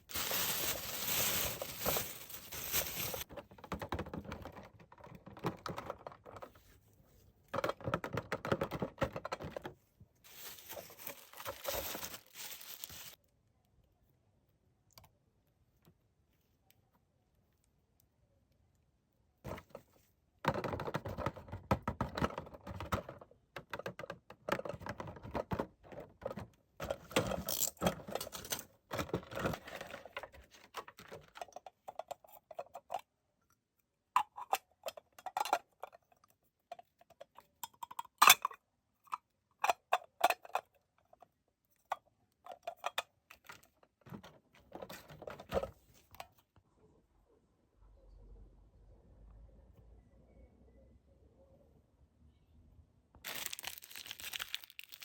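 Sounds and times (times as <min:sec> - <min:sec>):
packaging crinkling and rustling: 0:00.0 - 0:03.3, 0:10.3 - 0:13.2, 0:53.2 - 0:55.0.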